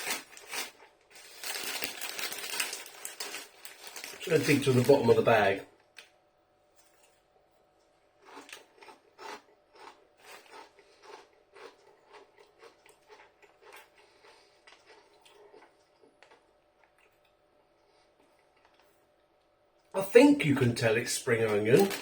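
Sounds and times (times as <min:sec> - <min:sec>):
crisps being chewed: 0:00.0 - 0:05.1, 0:08.2 - 0:17.4, 0:18.2 - 0:19.0.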